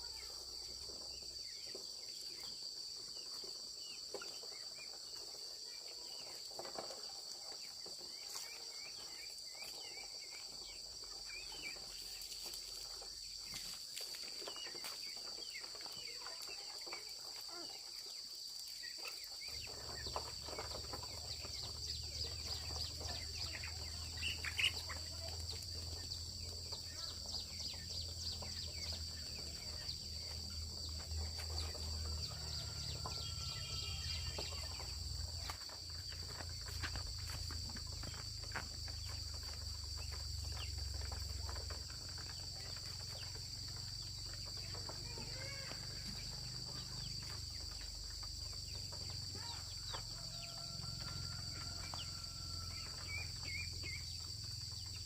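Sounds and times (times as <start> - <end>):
insects droning: 0.0 - 55.0.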